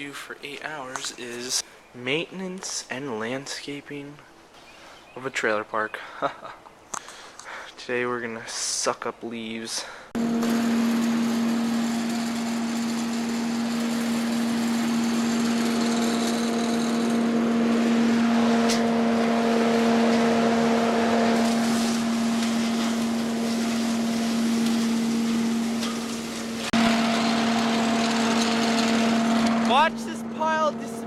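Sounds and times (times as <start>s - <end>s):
leaf vacuum running: 10.2s - 31.0s.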